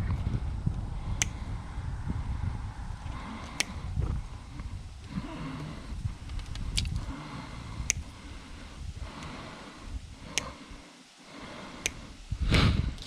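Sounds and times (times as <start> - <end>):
sharp clicks: 1.1 - 1.4, 3.4 - 3.8, 10.3 - 10.8, 11.8 - 12.2.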